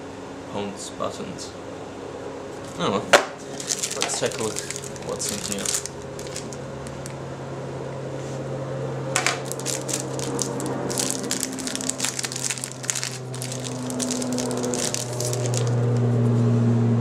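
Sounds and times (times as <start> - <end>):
cardboard and paper crinkling: 3.4 - 7.1, 9.2 - 16.0.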